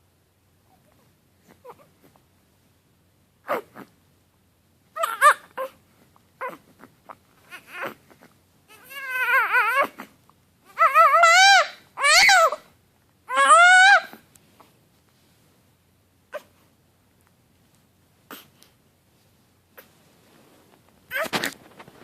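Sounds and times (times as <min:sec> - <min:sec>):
infant grunts and whimpers: 0:00.7 - 0:02.2, 0:03.4 - 0:03.9, 0:06.4 - 0:11.2, 0:18.3 - 0:18.7, 0:21.1 - 0:21.6
infant crying: 0:03.5 - 0:03.9, 0:05.0 - 0:05.8, 0:06.4 - 0:10.1, 0:10.7 - 0:12.7, 0:13.3 - 0:14.2, 0:21.1 - 0:21.5.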